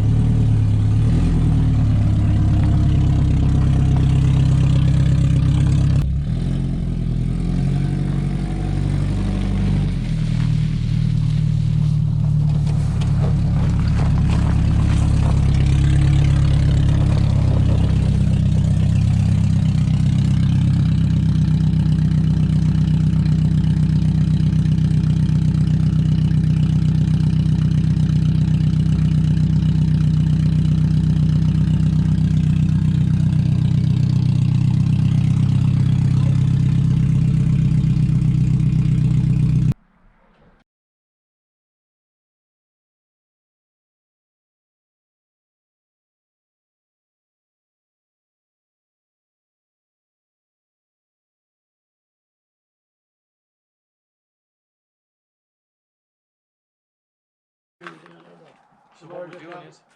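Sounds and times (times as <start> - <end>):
loud car engine without exhaust: 0.0 - 40.6.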